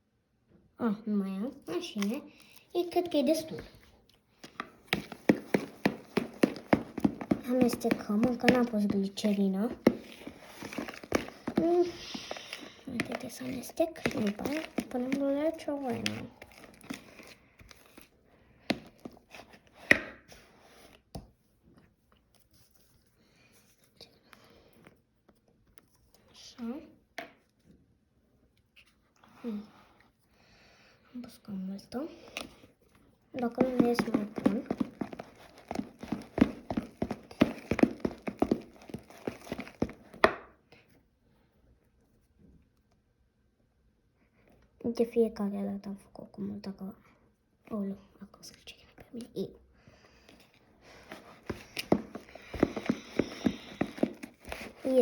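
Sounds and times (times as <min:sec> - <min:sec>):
spoon stirring slime in bowl: 0:01.8 - 0:18.1, 0:33.4 - 0:40.4, 0:50.3 - 0:55.0
spoon scraping bowl: 0:04.5 - 0:17.4.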